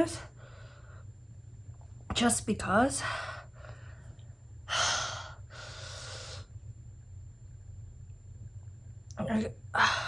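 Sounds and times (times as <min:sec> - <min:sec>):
woman breathing heavily: 0:00.2 - 0:01.2, 0:02.9 - 0:06.6, 0:09.7 - 0:10.0.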